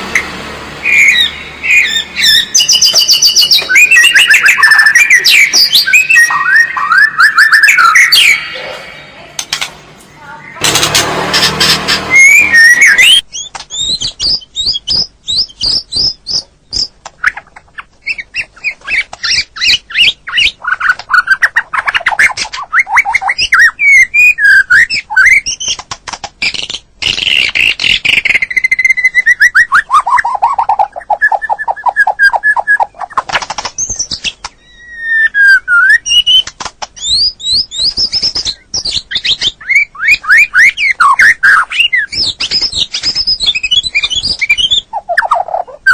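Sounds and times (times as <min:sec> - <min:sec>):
songbird singing varied song: 0:00.8 - 0:08.7.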